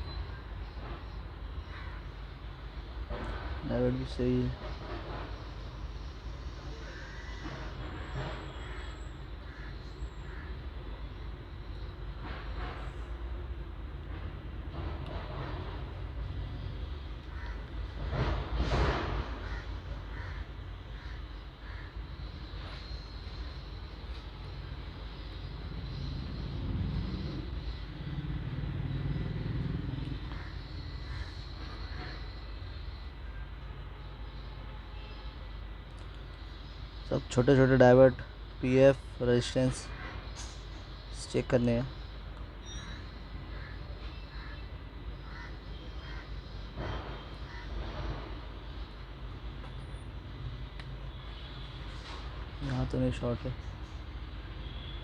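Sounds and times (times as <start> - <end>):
crows cawing: 1.6 - 2.2, 6.7 - 7.9, 8.5 - 10.6, 17.2 - 18.0, 19.2 - 22.0, 30.2 - 32.4, 39.8 - 40.6, 42.6 - 48.4
vehicle engine rumble: 24.1 - 32.2.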